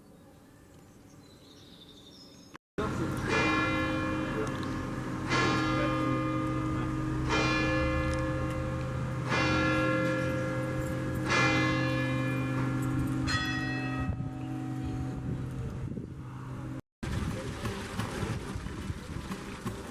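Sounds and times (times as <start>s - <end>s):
large bell tolling: 2.8s - 15.7s.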